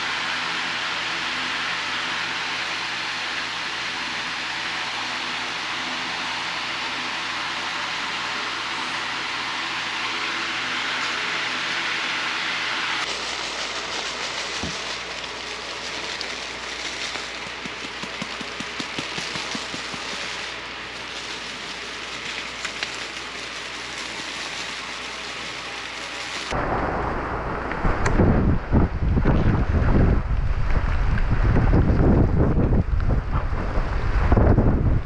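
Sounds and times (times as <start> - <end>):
heavy rain pelting down: 0.0 - 35.0
wind buffeting the microphone: 26.6 - 35.0.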